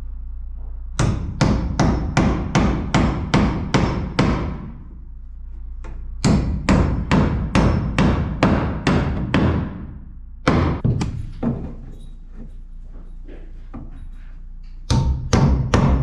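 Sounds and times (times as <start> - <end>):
hammer driving nails: 1.0 - 4.8, 6.2 - 11.8.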